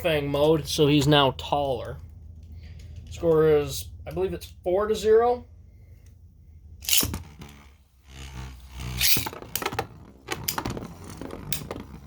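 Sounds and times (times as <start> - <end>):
low whir of spinning tops: 6.8 - 12.0
spinning tops scraping and clashing: 9.0 - 9.4.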